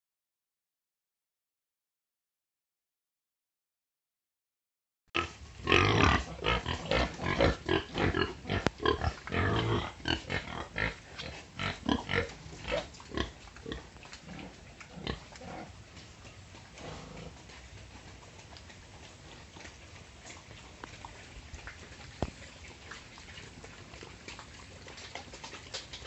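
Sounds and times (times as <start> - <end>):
pigs calling: 5.2 - 26.0.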